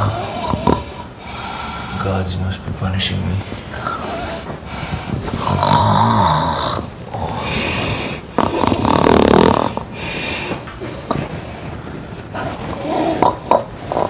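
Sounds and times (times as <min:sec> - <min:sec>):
person snoring loudly: 0:00.0 - 0:01.1, 0:05.3 - 0:11.2, 0:12.4 - 0:14.0
quiet breathing: 0:00.0 - 0:14.0.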